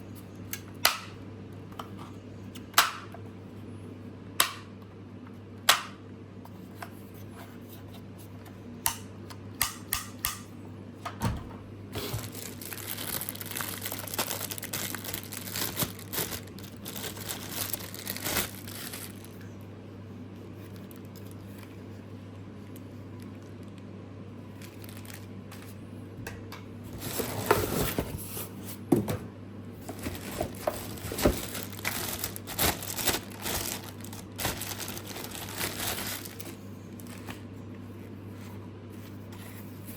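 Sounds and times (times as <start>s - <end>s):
plastic packaging crinkling: 12.0s - 19.4s, 24.5s - 25.7s, 29.9s - 37.4s.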